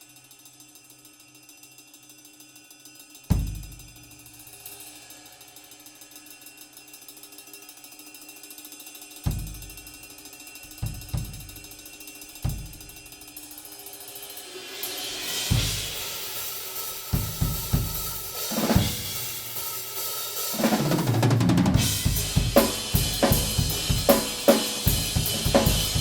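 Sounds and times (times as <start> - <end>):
low drum strokes: 10.7 - 11.8, 12.4 - 13.1, 14.4 - 19.6, 20.6 - 26.0.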